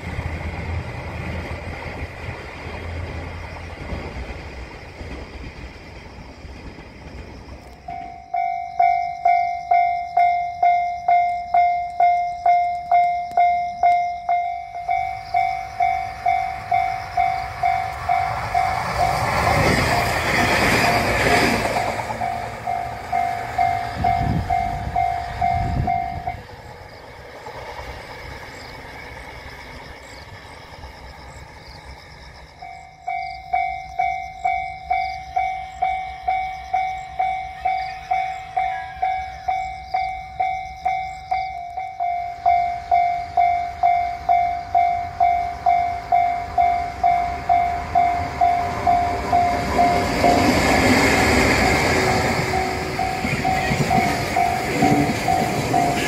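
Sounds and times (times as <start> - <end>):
level-crossing warning bell: 7.5 - 28.1, 29.1 - 56.0.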